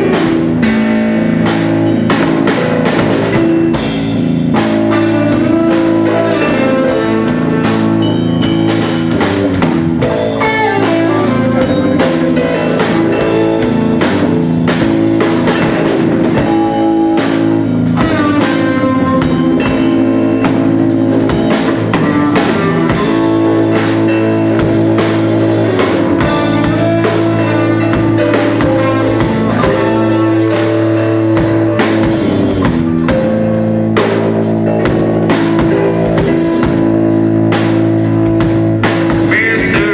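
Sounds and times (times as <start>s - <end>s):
drum kit: 0.0s - 39.9s
electric guitar: 0.0s - 39.9s.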